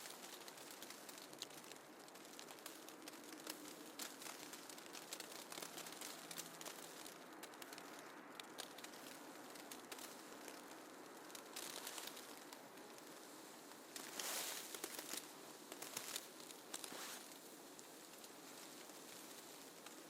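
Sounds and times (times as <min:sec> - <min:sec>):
faint steady hiss: 0:00.0 - 0:20.0
soft ticks and crackles: 0:00.0 - 0:20.0.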